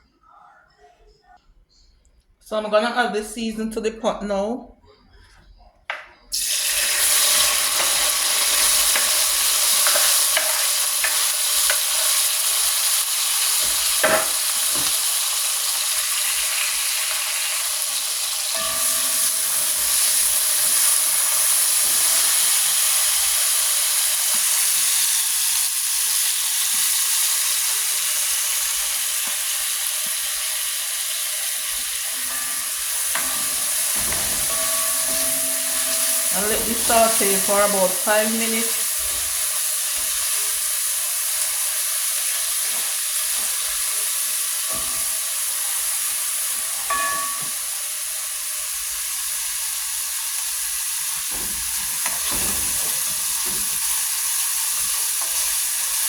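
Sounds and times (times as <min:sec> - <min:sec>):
seasoning sizzling in hot oil: 0:06.3 - 0:56.0
spoon clinking against pot: 0:18.5 - 0:22.3, 0:32.1 - 0:38.0, 0:46.9 - 0:47.7.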